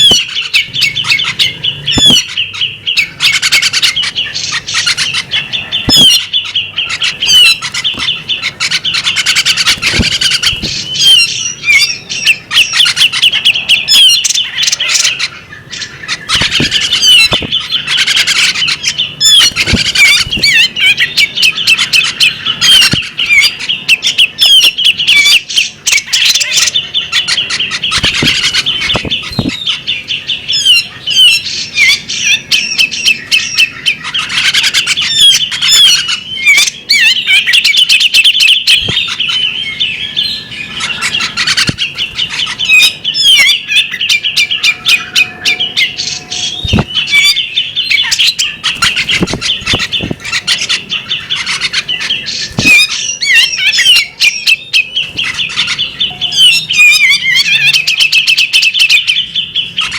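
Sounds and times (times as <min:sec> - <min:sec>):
bird singing chirps and trills: 0:00.0 - 0:59.9
bird sharp clicks: 0:05.8 - 0:11.3, 0:16.3 - 0:18.6, 0:27.8 - 0:29.7, 0:48.0 - 0:50.8.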